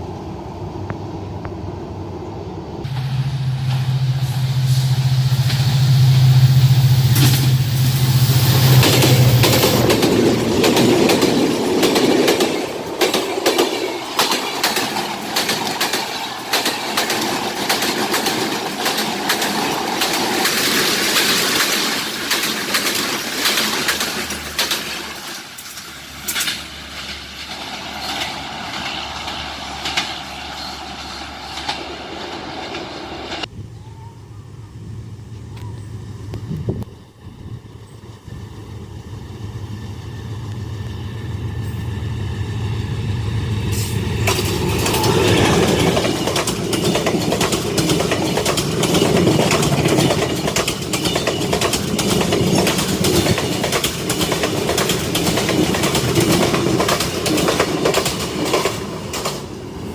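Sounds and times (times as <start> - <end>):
train engine hum: 0.0 - 59.9
train wheels clattering: 7.0 - 33.5, 43.7 - 59.6.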